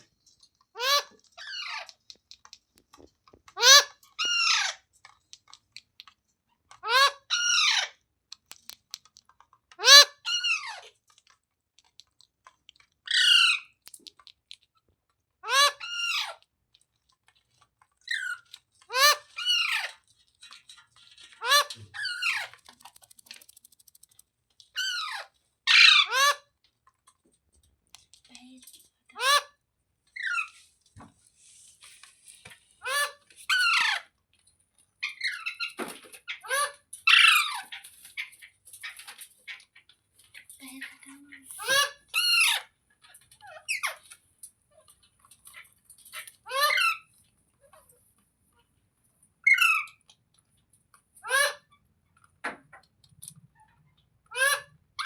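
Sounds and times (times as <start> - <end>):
faint clicks: 0.1 - 3.6, 8.3 - 9.8, 13.7 - 15.2, 19.9 - 24.8
parrot squawking: 0.8 - 1.9, 3.5 - 4.8, 6.8 - 8.0, 9.8 - 10.9, 13.1 - 13.7, 15.4 - 16.4, 18.1 - 20.0, 21.2 - 22.6, 24.8 - 26.4, 32.8 - 34.1, 35.0 - 39.6, 41.6 - 42.7, 46.1 - 47.1, 49.4 - 50.0, 51.2 - 51.7, 54.3 - 54.8
rapid faint clicks: 22.4 - 24.7.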